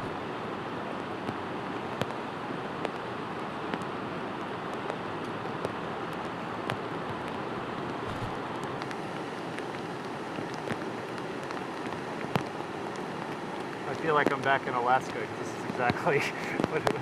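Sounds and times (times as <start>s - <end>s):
floodwater rushing in river: 0.0s - 17.0s.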